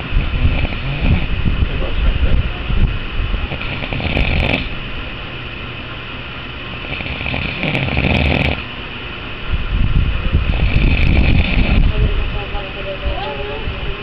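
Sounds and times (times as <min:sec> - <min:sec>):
rasping snoring: 0:00.0 - 0:01.4, 0:03.4 - 0:04.8, 0:06.8 - 0:08.6, 0:10.4 - 0:11.9
steady high hiss: 0:00.0 - 0:14.0.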